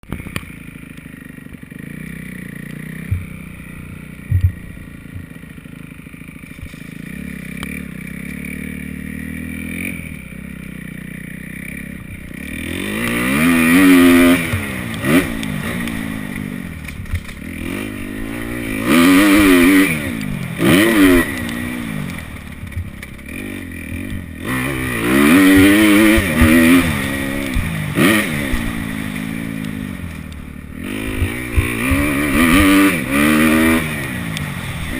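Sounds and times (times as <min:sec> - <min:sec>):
dirt bike engine revving: 0:00.0 - 0:34.9
dirt bike engine running: 0:00.0 - 0:34.9
engine knocks: 0:03.1 - 0:03.5, 0:04.2 - 0:05.4.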